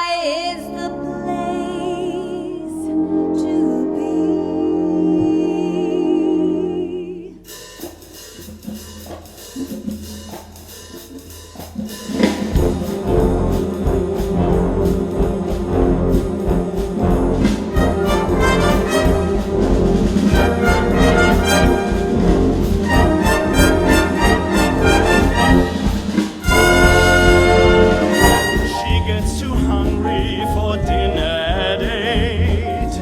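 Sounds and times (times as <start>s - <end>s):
wind orchestra playing: 0.4s - 7.0s, 12.5s - 32.8s
drum kit: 7.5s - 33.0s
light percussion: 7.6s - 33.0s.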